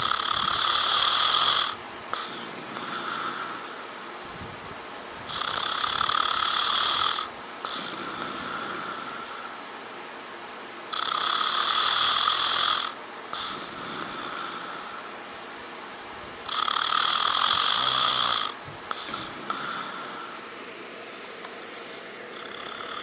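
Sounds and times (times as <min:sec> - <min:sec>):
man snoring: 0:00.0 - 0:04.2, 0:05.3 - 0:09.6, 0:10.9 - 0:15.2, 0:16.5 - 0:20.6, 0:22.2 - 0:23.0.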